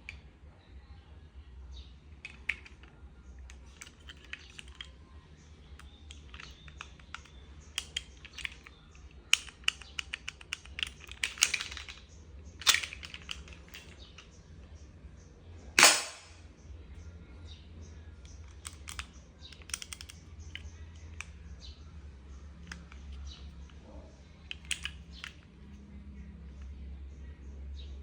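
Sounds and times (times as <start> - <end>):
plastic toy pistol clicks: 5.8 - 8.7, 9.3 - 12.0, 12.6 - 14.0, 15.8 - 16.4, 18.4 - 21.3, 24.5 - 25.4.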